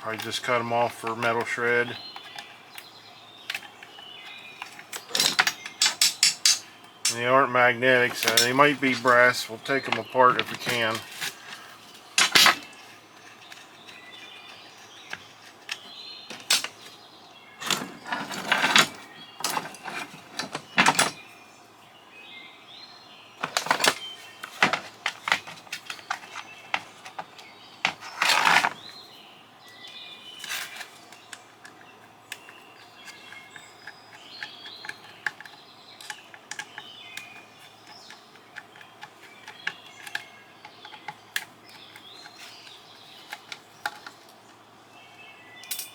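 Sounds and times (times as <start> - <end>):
birds chirping: 0.0 - 45.9
clinks of tools and metal parts: 4.6 - 7.3, 8.0 - 12.8, 15.6 - 16.9, 17.6 - 21.2, 23.4 - 28.8, 45.6 - 45.9.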